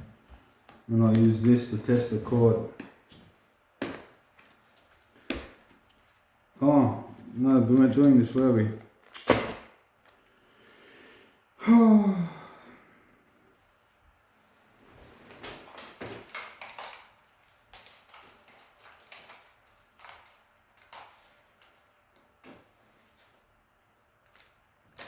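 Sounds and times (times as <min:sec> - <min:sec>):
hands handling plastic packaging: 0:00.2 - 0:06.5, 0:15.3 - 0:23.5, 0:24.1 - 0:25.0.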